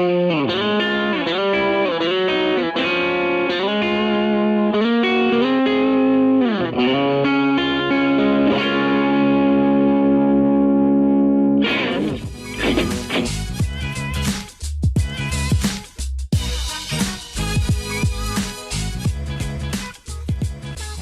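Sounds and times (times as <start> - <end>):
overdriven electric guitar: 0.0 - 13.6.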